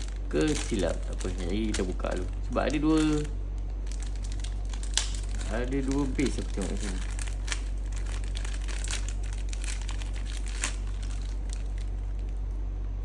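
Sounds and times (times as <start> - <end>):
packaging crinkling: 0.0 - 12.6
steady low hum: 0.0 - 13.0.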